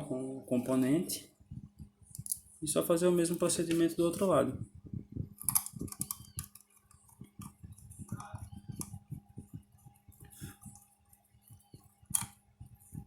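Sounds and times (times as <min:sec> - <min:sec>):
faint electrical hum: 0:00.0 - 0:13.0
screwdriver clicking and tapping: 0:05.4 - 0:09.0, 0:12.1 - 0:12.4.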